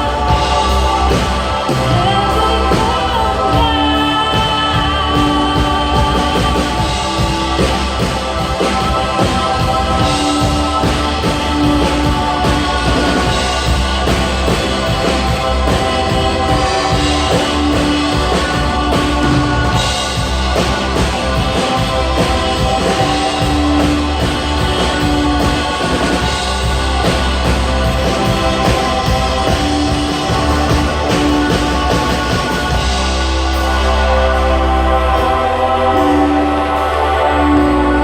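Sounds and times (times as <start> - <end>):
steady bass line: 0.0 - 38.0
worship band music: 0.0 - 38.0.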